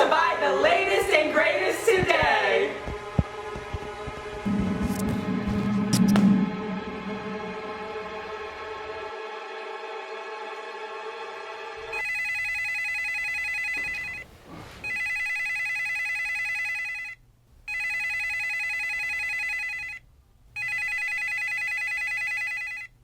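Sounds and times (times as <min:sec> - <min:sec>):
music: 0:00.3 - 0:12.0
telephone ringing: 0:11.9 - 0:14.2, 0:14.8 - 0:20.0, 0:20.6 - 0:23.0.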